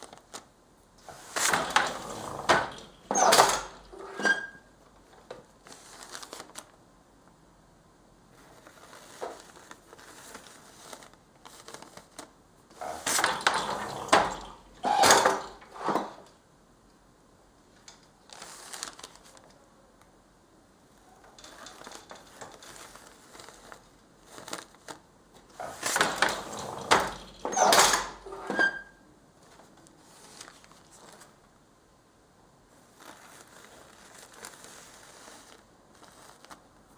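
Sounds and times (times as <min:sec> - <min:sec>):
loom clattering: 0:01.0 - 0:05.2, 0:12.8 - 0:16.3, 0:21.2 - 0:22.9, 0:25.5 - 0:29.0
paper rustling and crinkling: 0:05.0 - 0:06.8, 0:08.3 - 0:14.8, 0:18.2 - 0:19.6, 0:21.3 - 0:27.4, 0:29.4 - 0:31.6, 0:32.7 - 0:36.9.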